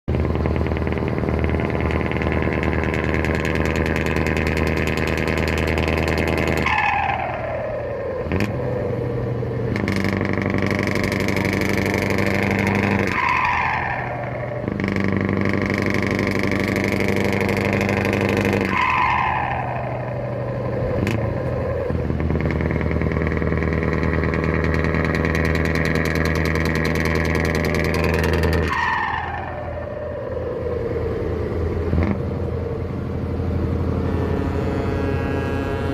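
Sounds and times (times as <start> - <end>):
truck engine revving: 0.0 - 35.9
turbo whistle: 34.0 - 35.9.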